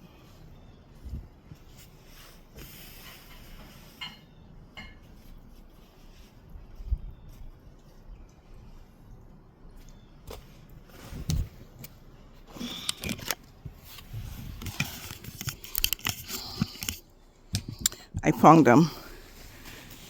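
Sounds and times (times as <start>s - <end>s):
snow scraping and crunching: 18.7s - 20.0s.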